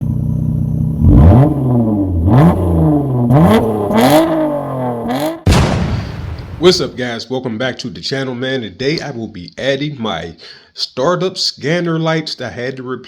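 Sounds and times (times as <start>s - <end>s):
vehicle engine revving: 0.0s - 5.5s
sudden loud burst: 5.2s - 7.0s.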